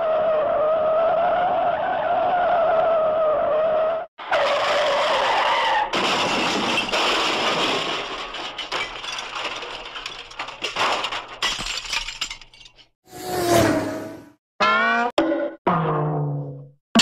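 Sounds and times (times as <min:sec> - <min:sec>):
glass smashing: 0:05.9 - 0:12.9
glass and debris clinking: 0:06.0 - 0:12.9.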